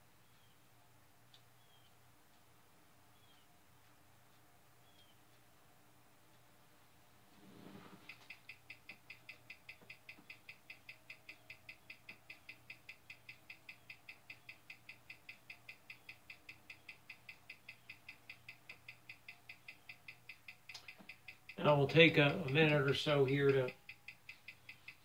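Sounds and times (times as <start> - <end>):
wristwatch ticking: 8.0 - 25.0.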